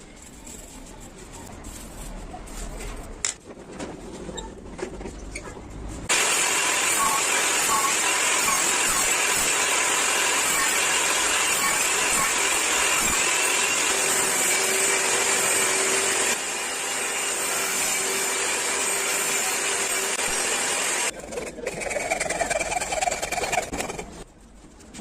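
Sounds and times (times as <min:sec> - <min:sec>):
woodworking power tool running: 0:06.1 - 0:21.1.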